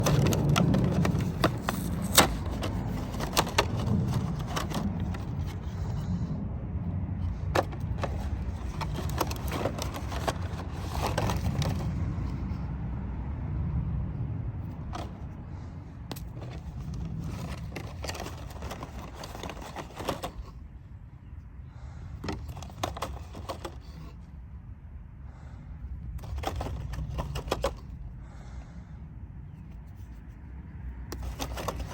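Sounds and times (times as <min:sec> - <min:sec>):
hard toys clicking and knocking: 0:00.0 - 0:06.2, 0:07.4 - 0:12.4, 0:16.1 - 0:20.6, 0:22.2 - 0:24.2, 0:26.2 - 0:28.0, 0:31.1 - 0:31.9
low steady rumble: 0:00.0 - 0:31.9.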